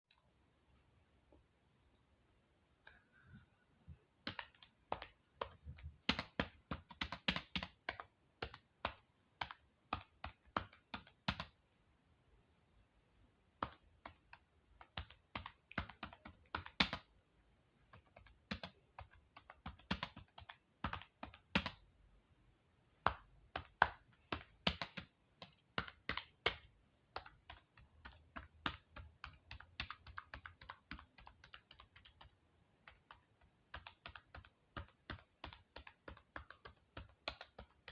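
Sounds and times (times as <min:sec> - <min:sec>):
computer keyboard typing: 0:04.2 - 0:11.6, 0:13.6 - 0:17.1, 0:17.9 - 0:21.8, 0:23.1 - 0:37.9.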